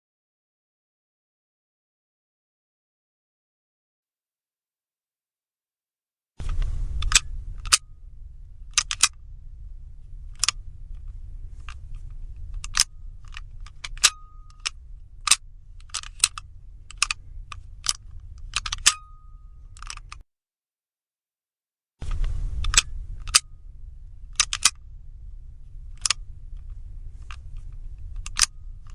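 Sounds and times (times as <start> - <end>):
low hum: 6.4 - 20.2, 22.0 - 28.9
door lock bolt clicking: 8.7 - 9.2, 12.5 - 20.2, 24.4 - 24.8, 28.2 - 28.9.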